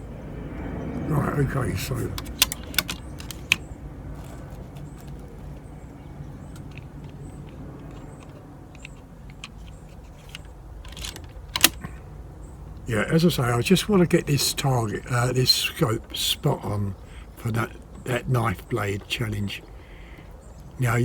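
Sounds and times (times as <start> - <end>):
low background rumble: 0.0 - 21.0
equipment clicks and rattles: 2.0 - 12.1.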